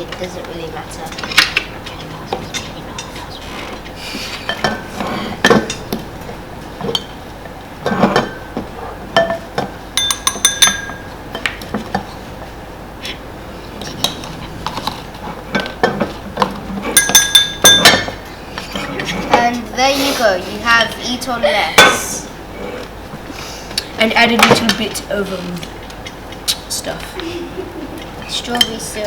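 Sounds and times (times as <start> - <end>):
ringing clinks: 10.0 - 11.1, 17.0 - 18.2.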